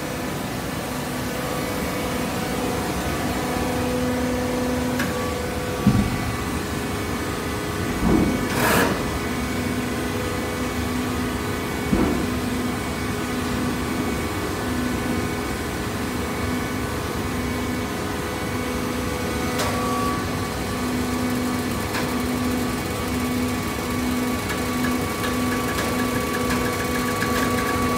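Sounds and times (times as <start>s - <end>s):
machine humming: 0.3s - 27.9s
machine knocks and clanks: 5.0s - 6.5s, 7.9s - 9.0s, 11.8s - 12.5s, 24.4s - 27.9s.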